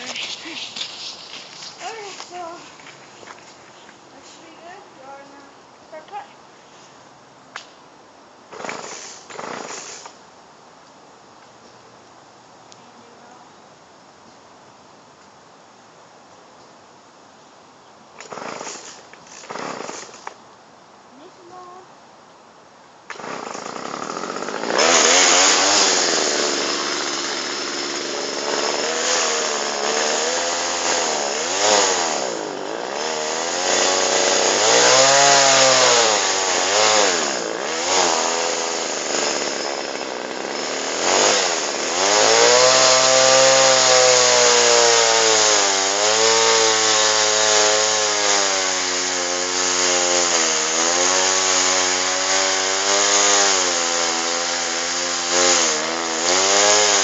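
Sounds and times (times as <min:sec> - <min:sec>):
chainsaw cutting wood: 0:00.0 - 0:03.5, 0:08.5 - 0:10.2, 0:18.2 - 0:20.4, 0:23.1 - 0:57.0.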